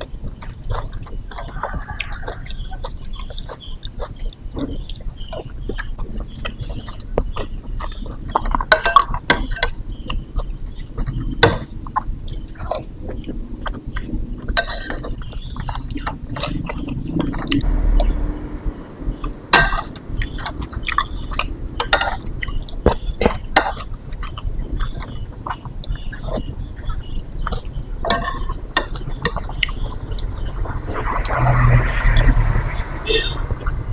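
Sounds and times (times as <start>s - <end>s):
wet chewing and mouth sounds: 0.0s - 32.5s
spoon clinking against dishes: 8.5s - 9.8s, 14.5s - 15.7s, 19.5s - 22.6s, 28.0s - 30.0s.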